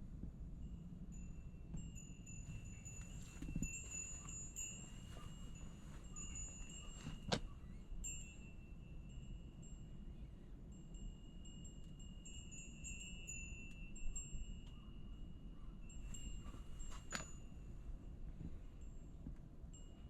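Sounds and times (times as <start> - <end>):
steady low rumble: 0.0 - 10.8, 14.1 - 20.0.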